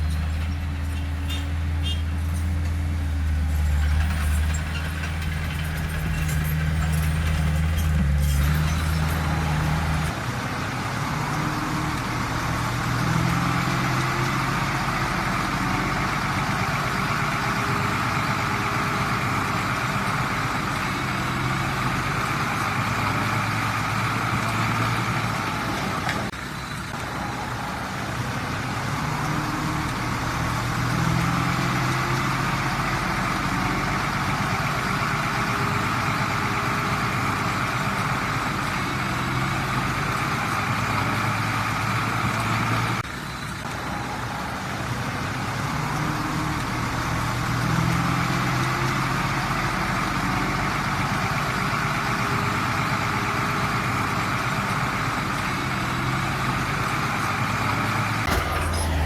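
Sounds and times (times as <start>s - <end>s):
light clanking: 0.0s - 10.1s, 58.3s - 59.0s
heavy diesel machinery engine: 0.0s - 59.0s.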